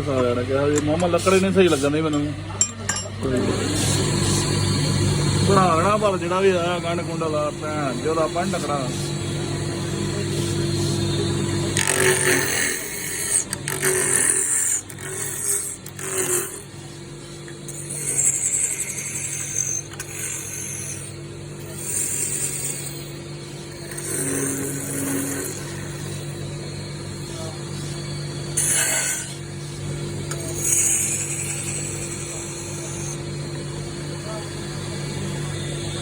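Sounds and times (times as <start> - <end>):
lathe motor hum: 0.0 - 36.0
chisel scraping turning wood: 11.7 - 26.5, 28.5 - 29.6, 30.2 - 33.2.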